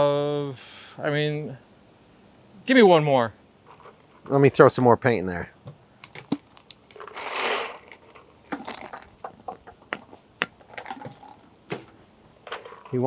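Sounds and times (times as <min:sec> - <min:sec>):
paintballs rattling into hopper: 0:06.1 - 0:11.6.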